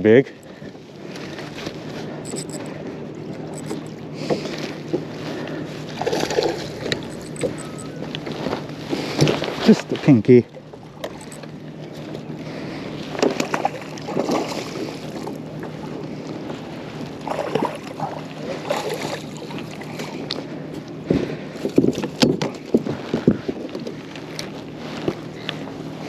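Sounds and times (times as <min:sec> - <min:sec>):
steady low hum: 0:00.0 - 0:21.8
knocks and rattles on boat: 0:21.2 - 0:24.0.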